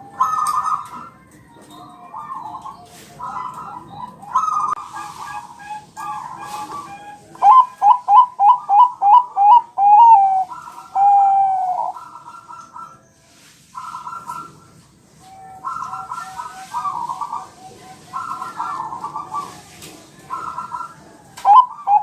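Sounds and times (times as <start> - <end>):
dove cooing: 0.0 - 13.0, 13.8 - 22.0.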